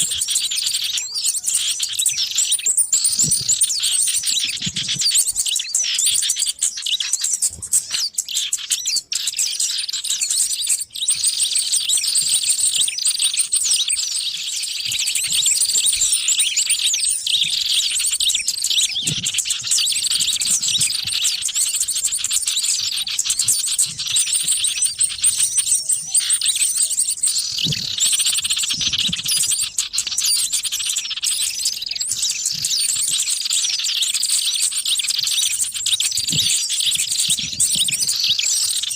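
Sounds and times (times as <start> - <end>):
small birds chirping and twittering: 0.0 - 38.9.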